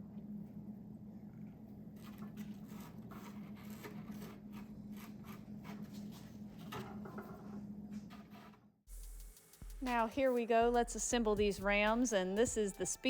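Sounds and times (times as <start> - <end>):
steady low hum: 0.0 - 8.1, 8.9 - 13.0
scrapes and clicks of hand work: 2.0 - 8.7.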